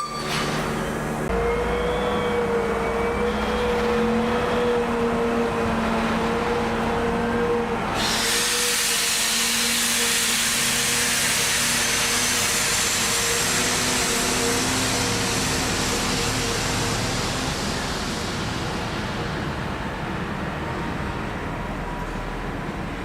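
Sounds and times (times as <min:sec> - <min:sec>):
loud even hiss: 0:08.0 - 0:19.4.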